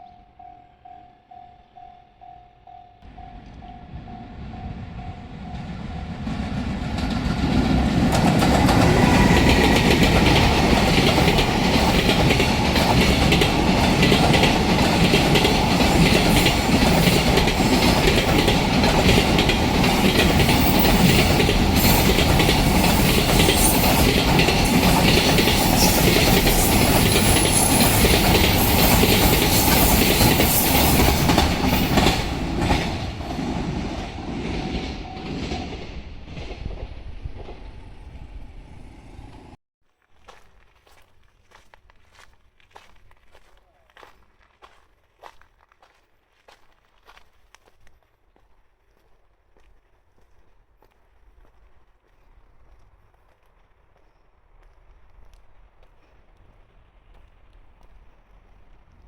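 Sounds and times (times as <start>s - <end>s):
train passing: 0.0s - 39.6s
wheels clacking over rail joints: 3.1s - 37.6s.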